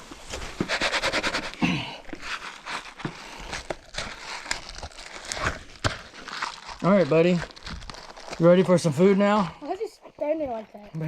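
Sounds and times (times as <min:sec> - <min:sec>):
material crinkling and rustling: 0:02.0 - 0:09.8.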